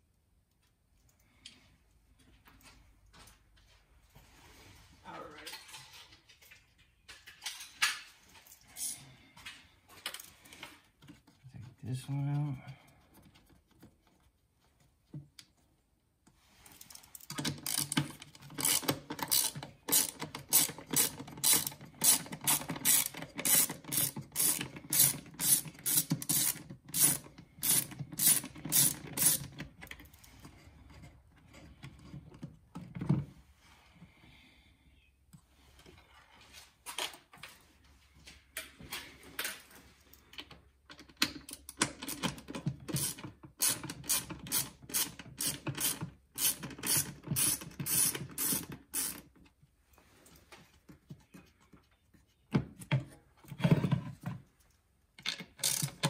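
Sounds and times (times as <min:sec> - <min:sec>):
ratchet clicking: 0:17.5 - 0:29.5, 0:43.0 - 0:49.2, 0:55.6 - 0:56.0.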